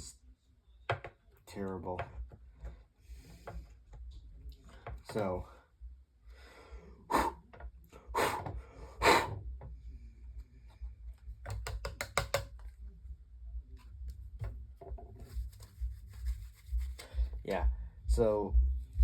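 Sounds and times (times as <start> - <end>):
sharp knocks on plastic: 11.4 - 12.6.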